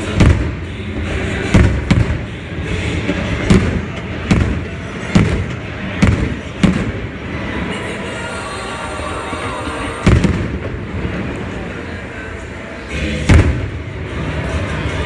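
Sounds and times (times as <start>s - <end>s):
fireworks booming: 0.0s - 7.7s, 9.9s - 11.8s, 13.2s - 14.9s
steady background rumble: 0.0s - 15.0s.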